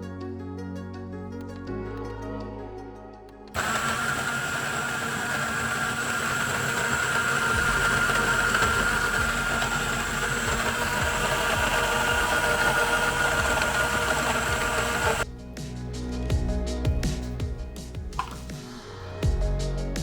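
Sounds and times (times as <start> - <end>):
small electric motor whining: 3.6 - 15.2.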